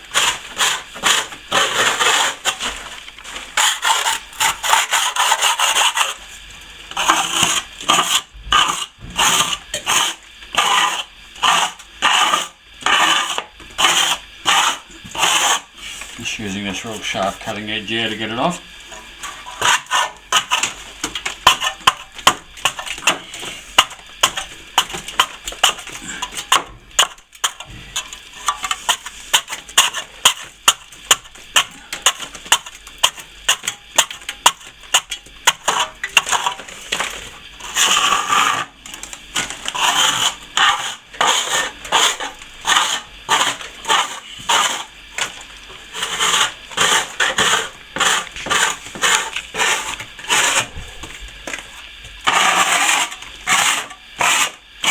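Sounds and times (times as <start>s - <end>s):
blade scraping plaster: 0.1s - 6.3s, 6.9s - 54.9s.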